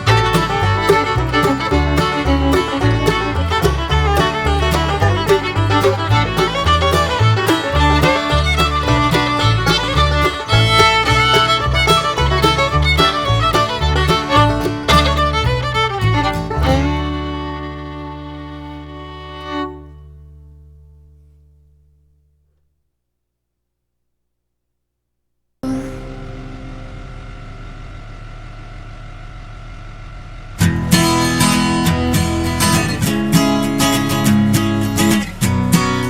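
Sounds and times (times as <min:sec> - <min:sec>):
fiddle and banjo tune: 0:00.0 - 0:20.7.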